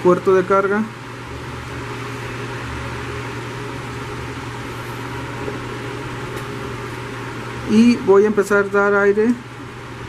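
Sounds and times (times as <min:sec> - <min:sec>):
electric fan hiss: 0:00.0 - 0:10.0
low hum: 0:00.9 - 0:08.5.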